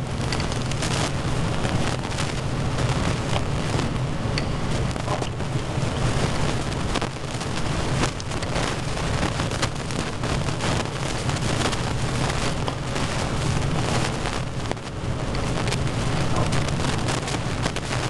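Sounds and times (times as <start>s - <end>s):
steady rain: 0.0s - 18.0s.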